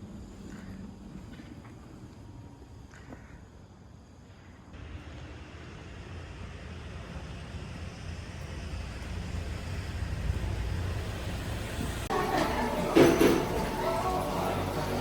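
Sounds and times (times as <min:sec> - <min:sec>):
low vehicle rumble: 0:04.8 - 0:15.0.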